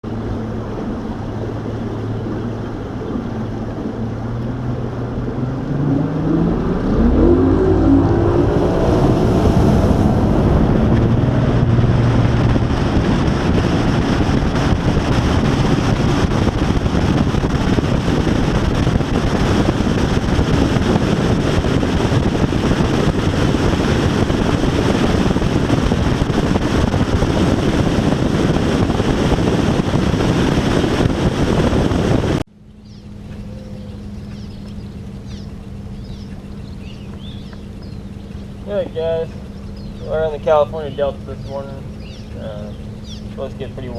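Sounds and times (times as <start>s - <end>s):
rushing water: 0.0s - 32.4s, 33.9s - 43.9s
outboard motor running: 0.0s - 43.9s
wind noise on microphone: 0.0s - 43.9s.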